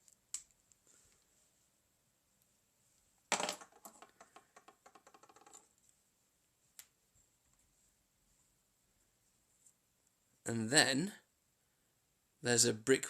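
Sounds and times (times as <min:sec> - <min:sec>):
plastic piece bouncing on hard surface: 0:03.3 - 0:05.7.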